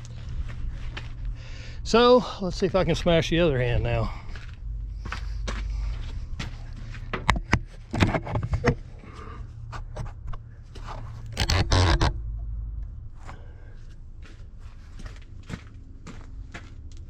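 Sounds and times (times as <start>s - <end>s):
cover panel scraping: 10.8s - 12.2s.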